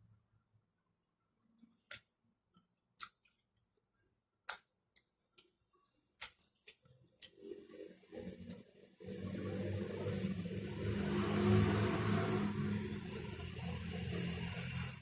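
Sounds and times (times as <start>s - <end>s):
small clicks and taps: 1.6s - 7.4s.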